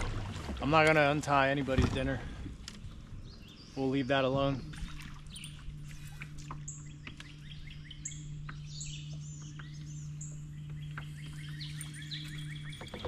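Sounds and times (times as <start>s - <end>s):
steady low hum: 0.0s - 13.0s
songbirds chirping and singing: 2.8s - 13.0s.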